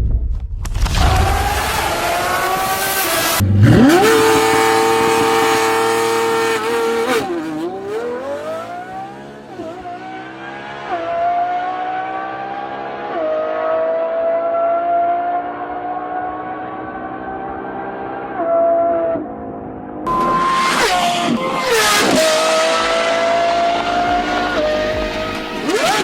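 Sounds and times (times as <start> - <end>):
car engine revving at high revs: 1.4 - 19.3, 20.1 - 26.0.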